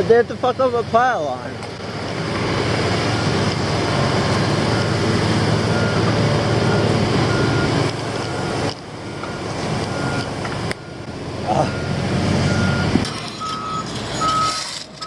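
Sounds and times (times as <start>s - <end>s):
truck engine running loudly: 0.0s - 15.0s
backup alarm beeping: 5.7s - 14.6s.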